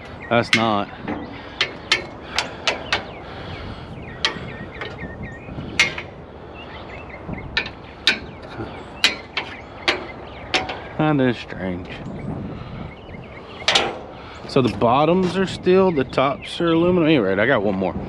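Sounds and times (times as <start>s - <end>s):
metal chair frames clicking: 0.0s - 3.2s, 4.2s - 6.2s, 7.5s - 11.1s, 13.5s - 15.5s.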